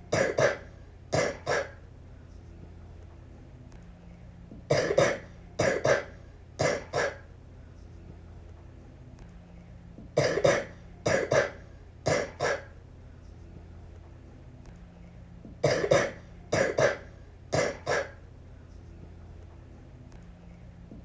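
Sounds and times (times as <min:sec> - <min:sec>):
girl coughing: 0:00.1 - 0:01.8, 0:04.7 - 0:07.2, 0:10.2 - 0:12.7, 0:15.6 - 0:18.2.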